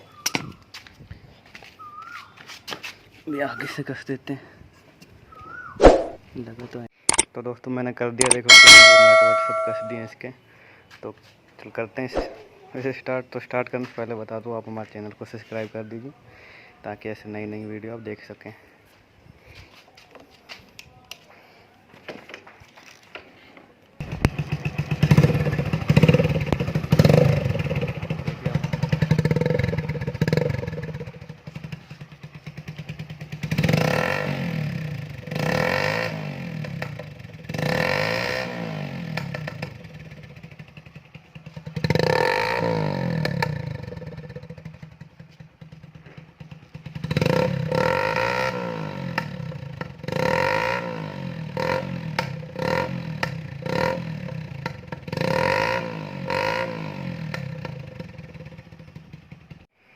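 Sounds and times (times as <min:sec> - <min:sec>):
motorcycle engine revving: 0:24.0 - 0:59.7.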